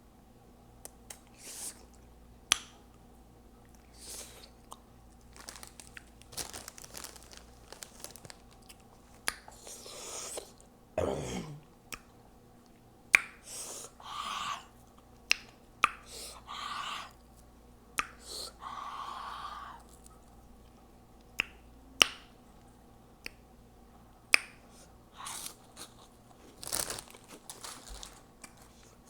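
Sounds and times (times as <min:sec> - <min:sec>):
low throat sound: 0:11.0 - 0:11.7
sharp mouth clicks: 0:11.5 - 0:12.1, 0:18.0 - 0:18.4.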